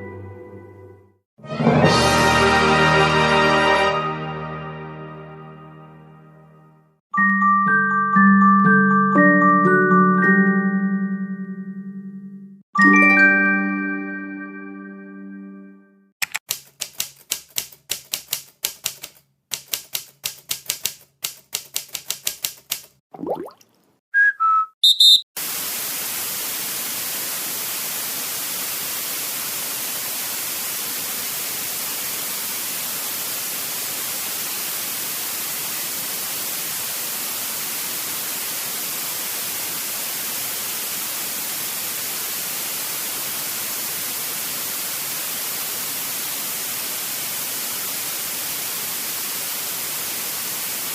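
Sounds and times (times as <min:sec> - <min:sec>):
rapid clicking: 0:16.2 - 0:23.0
short high beeps: 0:24.8 - 0:25.2
static hiss: 0:25.4 - 0:50.9.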